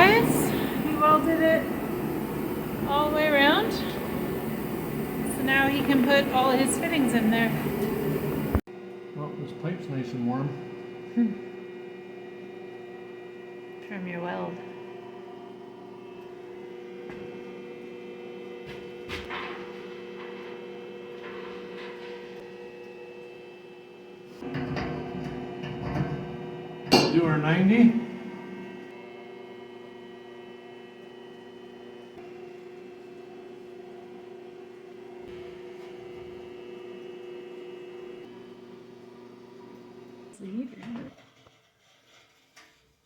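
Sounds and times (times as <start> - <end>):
steady electrical hum: 0.0 - 8.6
electrical hum: 0.0 - 41.1.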